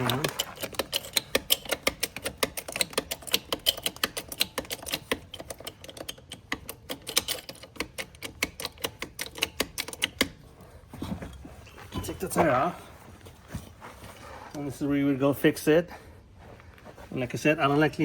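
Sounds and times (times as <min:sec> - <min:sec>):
mechanism clicking rapidly: 0:00.0 - 0:10.4.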